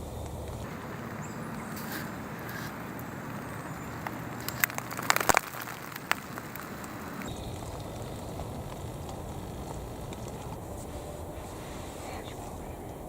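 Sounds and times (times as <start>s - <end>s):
outdoor hiss: 0.0s - 13.0s
sharp crackles and snaps: 0.0s - 13.0s.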